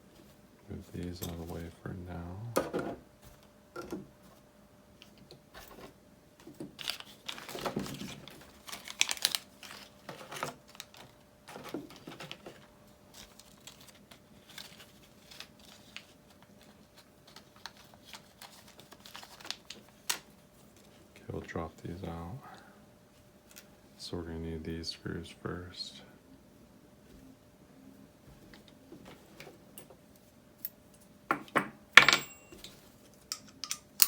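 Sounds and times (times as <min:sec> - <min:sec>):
plastic crinkling and rustling: 0:05.6 - 0:21.1
light clicks of small parts: 0:32.5 - 0:34.0.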